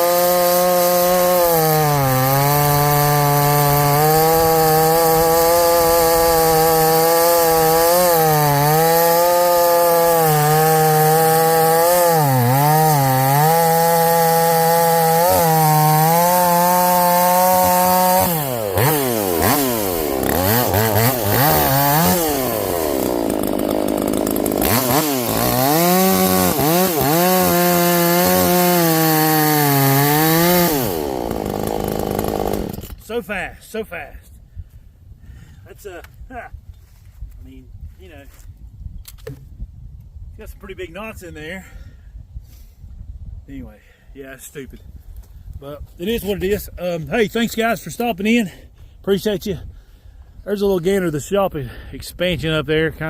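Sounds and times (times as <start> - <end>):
chainsaw cutting log: 0.0 - 33.2.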